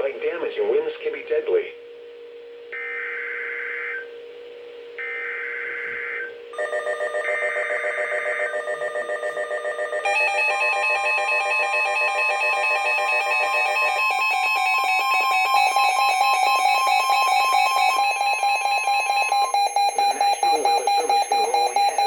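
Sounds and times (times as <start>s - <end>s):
faint steady hum: 0.0s - 22.0s
buzzy digital data bursts: 5.0s - 22.0s
rapid pulsing alert beep: 6.8s - 22.0s.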